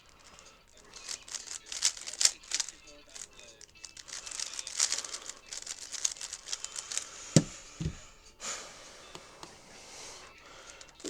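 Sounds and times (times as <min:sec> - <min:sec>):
speed cube clicking and rattling: 0:00.0 - 0:08.0, 0:10.6 - 0:11.0.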